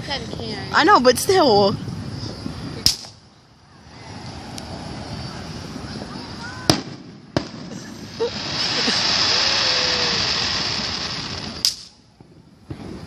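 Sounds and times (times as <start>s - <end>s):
firework shower hissing crackle: 1.8s - 13.0s
firework bangs: 5.7s - 13.0s.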